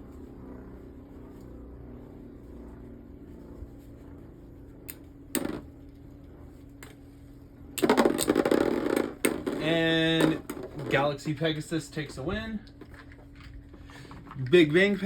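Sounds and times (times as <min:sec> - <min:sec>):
spinning tops whirring: 0:07.8 - 0:11.3.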